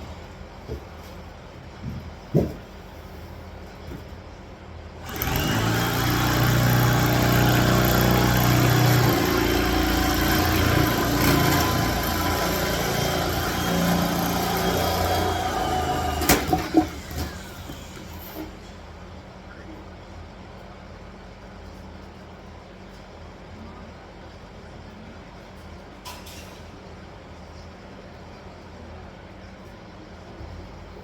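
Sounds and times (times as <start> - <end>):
motor running: 5.0 - 18.4.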